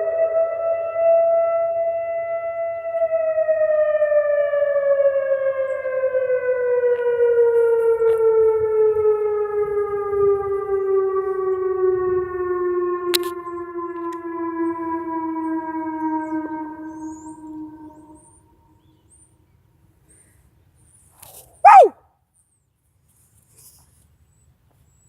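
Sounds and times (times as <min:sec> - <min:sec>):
tornado warning siren: 0:00.0 - 0:18.9.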